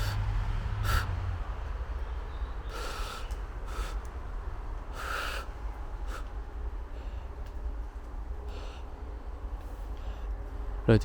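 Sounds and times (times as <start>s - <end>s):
person breathing close: 0.0s - 1.2s, 2.7s - 4.1s, 4.9s - 7.4s
low steady rumble: 0.0s - 11.0s.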